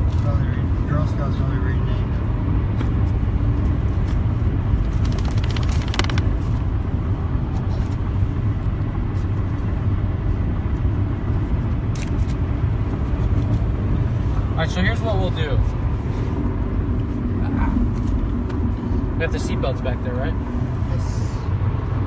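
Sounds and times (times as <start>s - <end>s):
car engine idling: 4.6s - 7.3s.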